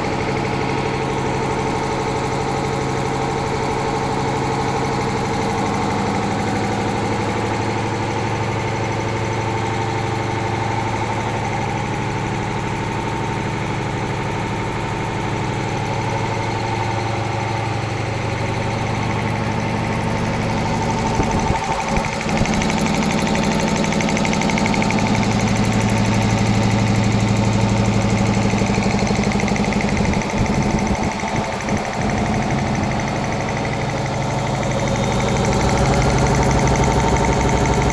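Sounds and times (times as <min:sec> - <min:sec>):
air compressor humming: 0:00.0 - 0:37.9.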